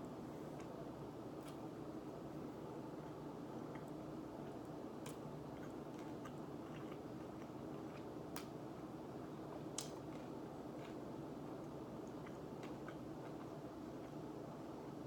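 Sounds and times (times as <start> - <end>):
low background hum: 0.0 - 15.0
person chewing pizza: 2.9 - 14.5.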